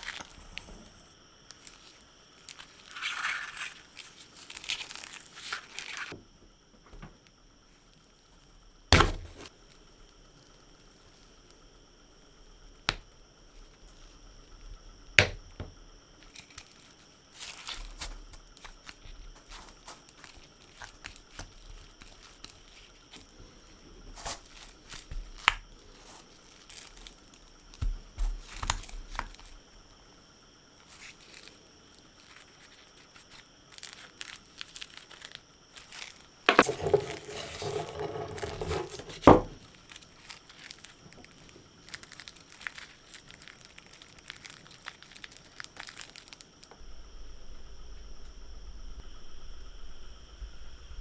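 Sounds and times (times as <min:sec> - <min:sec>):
rubbing or scraping noise: 0:36.5 - 0:39.6.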